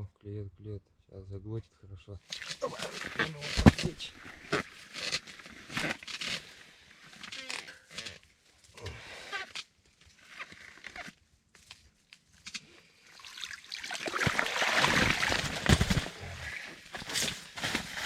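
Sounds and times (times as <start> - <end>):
water splashing: 13.1 - 16.9
slush crunching: 13.8 - 18.0.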